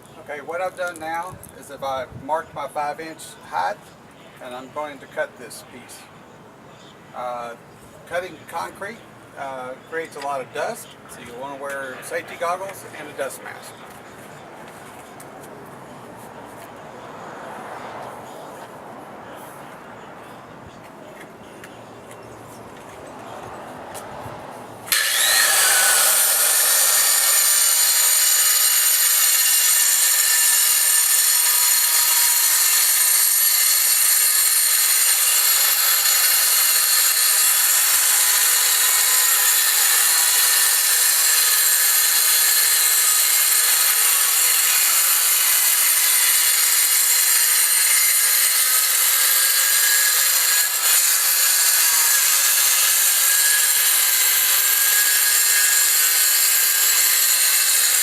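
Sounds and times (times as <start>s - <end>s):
circular saw cutting concrete: 24.9s - 58.0s.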